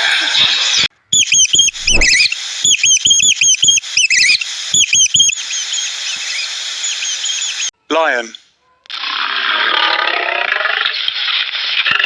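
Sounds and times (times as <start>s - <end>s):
bird chirping: 1.1s - 7.7s.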